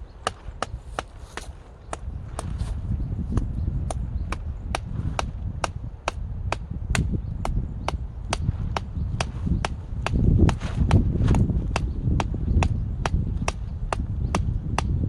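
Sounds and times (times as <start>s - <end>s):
dull low thud: 0.2s - 15.0s.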